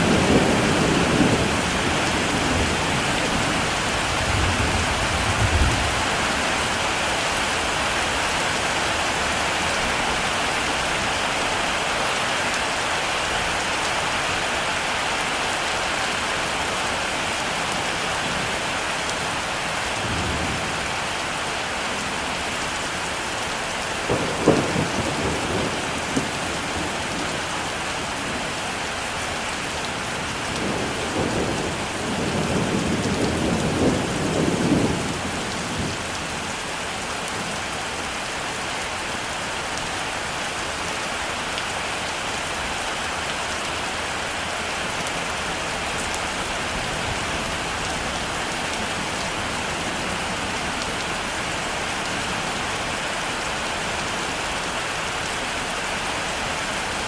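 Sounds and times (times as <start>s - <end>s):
heavy rain falling: 0.0s - 57.0s
thunder rumbling: 24.0s - 27.5s, 30.5s - 36.0s.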